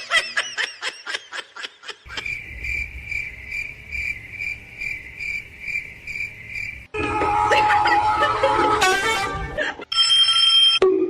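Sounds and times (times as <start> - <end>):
cricket chirping: 2.1 - 7.0.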